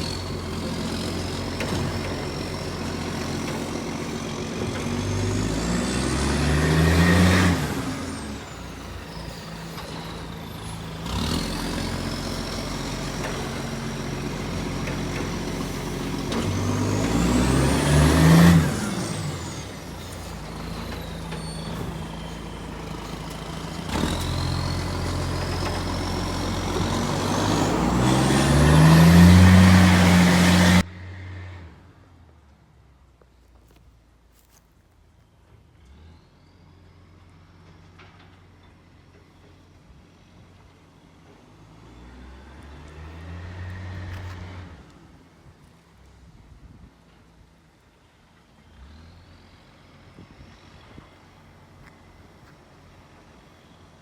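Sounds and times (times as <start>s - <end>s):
diesel truck engine revving: 0.0s - 32.1s.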